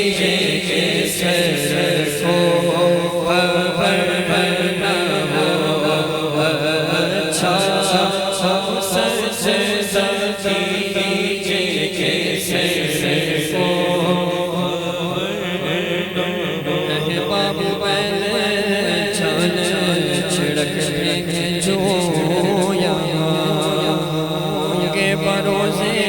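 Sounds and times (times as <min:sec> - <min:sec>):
voices chanting wordless melody: 0:00.0 - 0:26.0.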